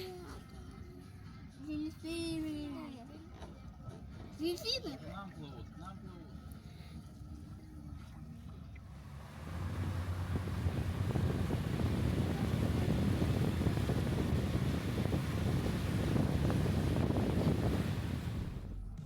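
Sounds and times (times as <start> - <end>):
low rumble: 8.0 - 19.0
wind buffeting microphone: 8.9 - 18.9.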